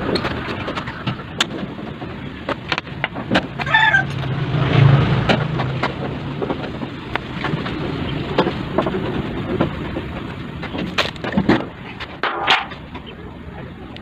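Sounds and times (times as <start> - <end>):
sharp clicks and knocks: 0.0 - 4.3, 5.2 - 13.1
rooster crowing: 3.6 - 4.3.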